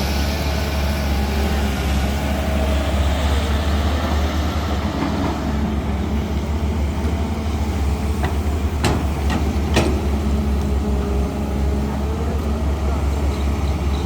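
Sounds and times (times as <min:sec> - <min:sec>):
diesel engine droning: 0:00.0 - 0:14.0
sharp metallic knocks: 0:08.2 - 0:10.2.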